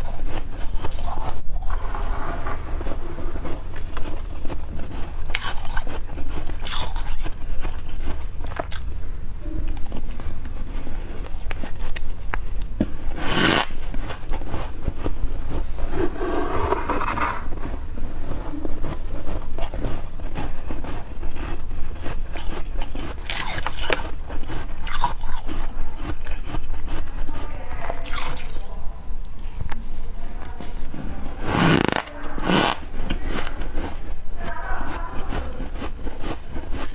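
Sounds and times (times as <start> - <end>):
spoon scraping soft frost: 0.0 - 8.6, 10.1 - 26.4, 30.3 - 36.0
steady low hum: 0.0 - 36.9
crunching bites: 2.8 - 9.0, 9.7 - 27.0.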